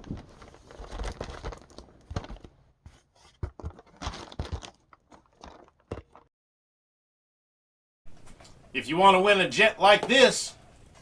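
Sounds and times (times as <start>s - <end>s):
plastic film crinkling: 0.0s - 2.6s, 3.5s - 5.8s.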